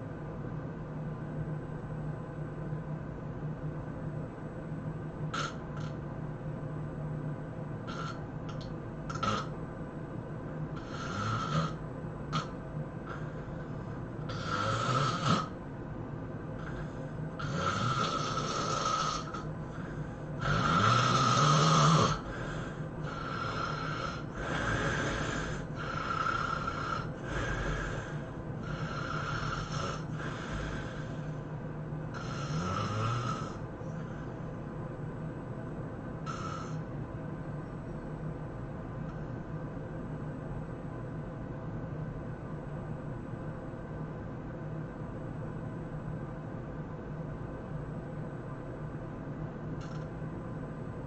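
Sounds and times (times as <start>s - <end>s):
person snoring heavily: 5.3s - 6.0s, 7.8s - 8.2s, 9.1s - 9.6s, 10.8s - 15.6s, 16.6s - 31.5s, 32.1s - 34.4s, 36.2s - 36.9s.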